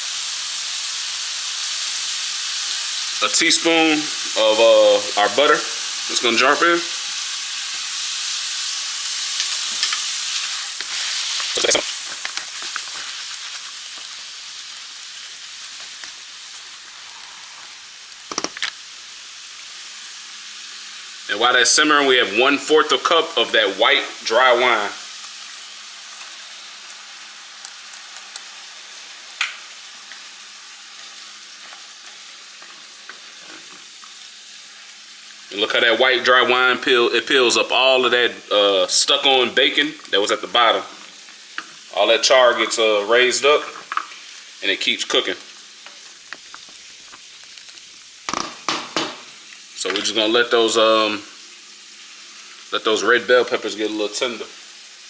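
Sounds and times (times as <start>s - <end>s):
vegetables sizzling in a pan: 0.0s - 55.0s
knock: 48.3s - 49.2s.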